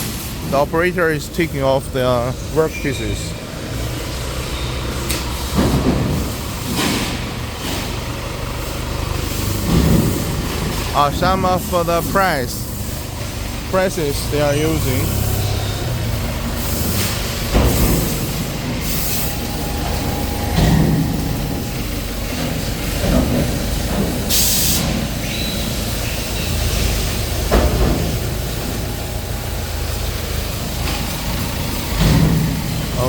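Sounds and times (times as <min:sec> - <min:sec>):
factory machinery humming: 0:00.0 - 0:33.0
compressed air hissing: 0:14.6 - 0:22.9, 0:24.1 - 0:27.3.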